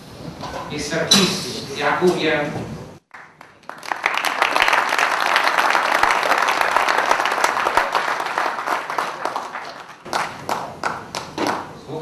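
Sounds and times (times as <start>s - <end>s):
audience applauding: 3.1s - 11.6s.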